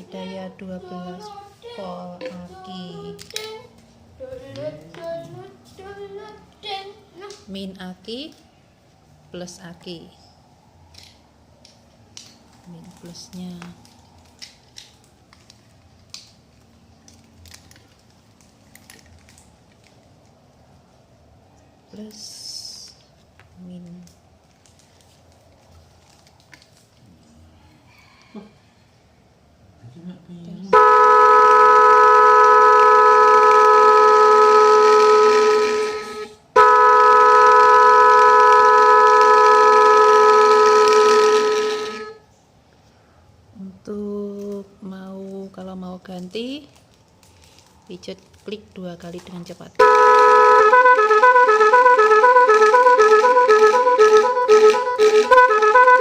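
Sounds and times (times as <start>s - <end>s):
horn sounding a steady chord: 30.7s - 42.2s, 49.8s - 56.0s.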